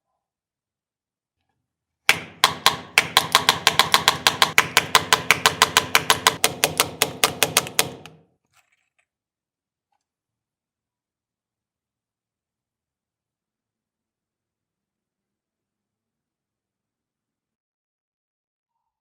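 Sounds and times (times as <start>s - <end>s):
hand drill hammering masonry: 2.1s - 8.2s.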